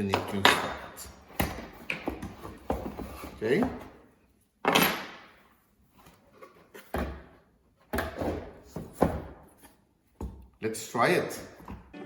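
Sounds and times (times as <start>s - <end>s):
hard objects knocking and clunking: 0.0s - 4.0s.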